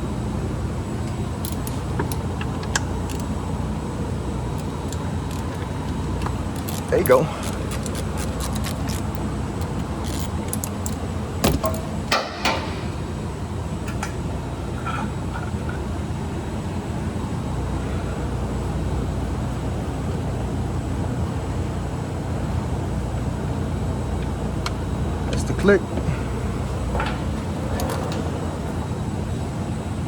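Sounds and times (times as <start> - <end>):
shop background rumble: 0.0 - 30.0
hand tools clicking and knocking: 1.4 - 3.3, 4.6 - 12.7.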